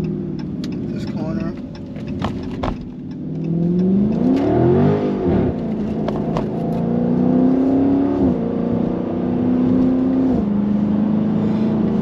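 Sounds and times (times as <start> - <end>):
car engine pulling under throttle: 0.0 - 12.0.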